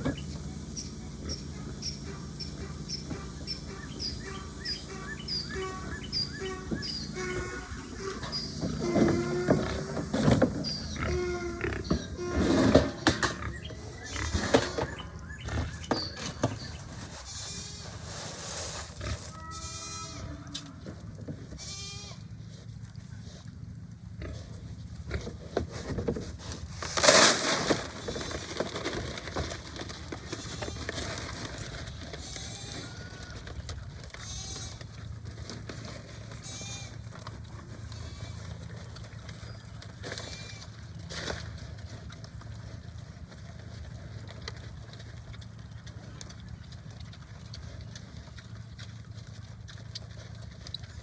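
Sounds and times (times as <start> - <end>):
pigs squealing: 0.8 - 16.4, 19.0 - 20.6, 30.1 - 41.0.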